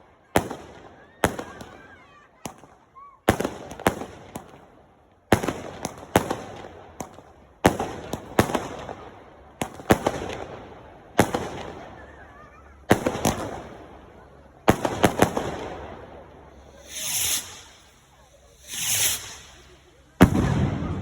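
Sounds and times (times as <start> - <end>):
firework shell bursts: 14.8 - 20.5.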